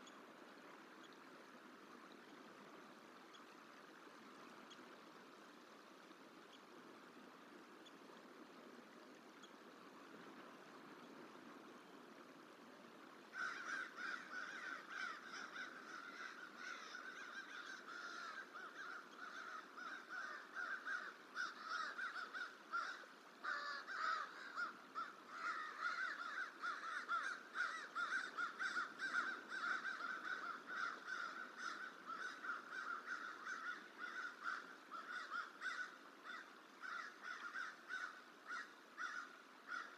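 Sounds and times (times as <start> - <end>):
faint background hiss: 0.0 - 39.9
crow cawing: 13.3 - 39.9.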